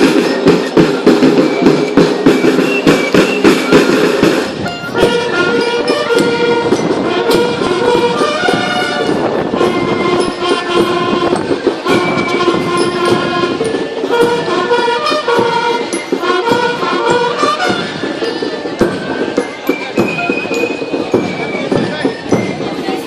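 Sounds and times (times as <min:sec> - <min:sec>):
busy drumming: 0:00.0 - 0:23.0
marching band playing: 0:00.0 - 0:23.0.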